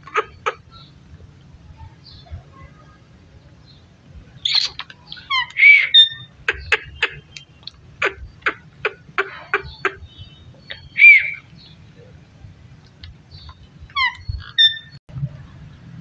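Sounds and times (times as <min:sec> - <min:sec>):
parrot squawking and calling: 0:04.4 - 0:07.4, 0:08.0 - 0:11.5, 0:13.9 - 0:15.0.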